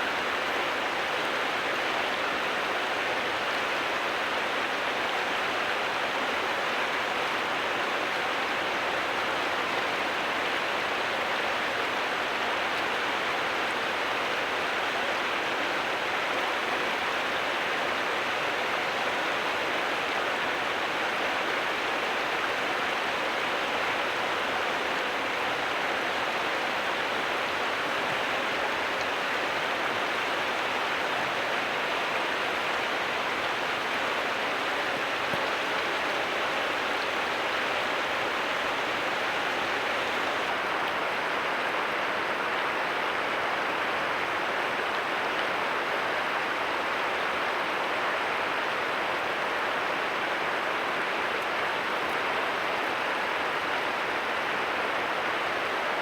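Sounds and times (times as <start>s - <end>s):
running water rushing: 18.0s - 55.9s.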